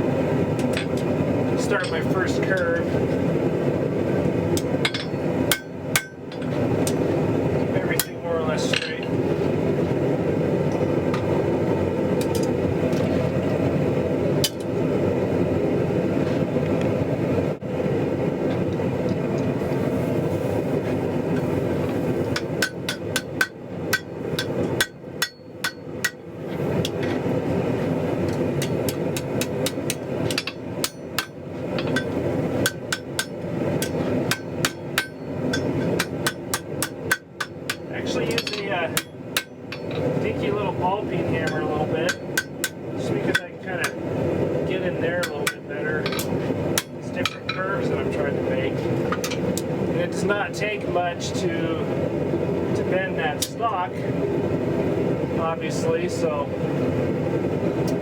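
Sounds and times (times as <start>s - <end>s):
hammer striking hot metal: 4.5s - 7.1s, 7.9s - 9.1s, 22.2s - 27.2s, 28.2s - 40.6s, 41.2s - 44.1s, 44.8s - 47.7s.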